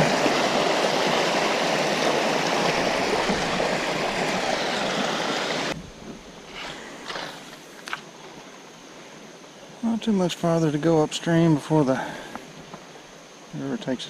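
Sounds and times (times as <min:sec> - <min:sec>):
water rushing over rocks: 0:00.0 - 0:06.0.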